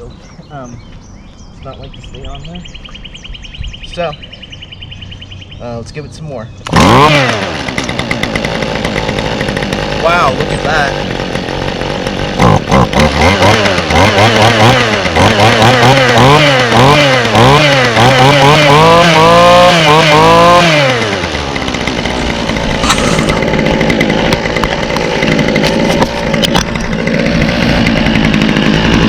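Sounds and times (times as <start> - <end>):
string trimmer engine revving: 6.6 - 29.0.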